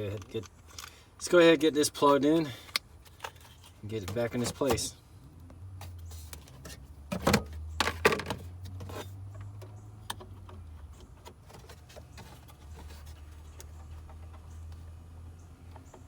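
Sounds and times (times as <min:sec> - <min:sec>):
plastic clattering: 0:06.4 - 0:09.1.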